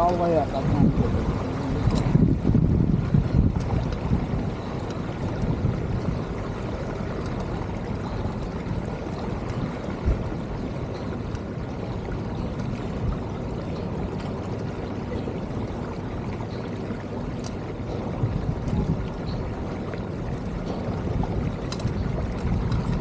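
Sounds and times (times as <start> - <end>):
water rushing along boat hull: 0.0 - 23.0.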